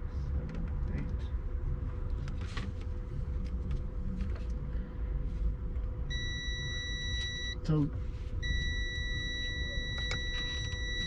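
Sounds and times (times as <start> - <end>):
low background rumble: 0.0 - 11.0
multimeter continuity beep: 6.1 - 7.6, 8.4 - 11.0.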